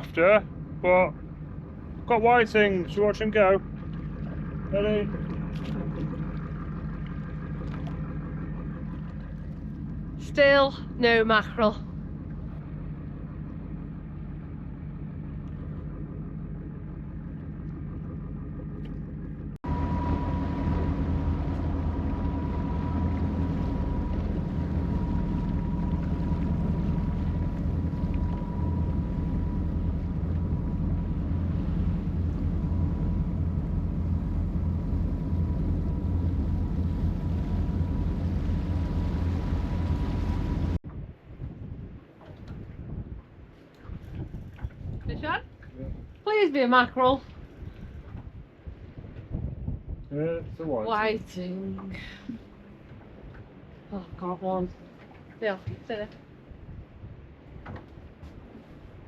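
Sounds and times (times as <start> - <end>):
motorboat engine running: 0.0 - 59.0
thin steady high tone: 19.6 - 40.8.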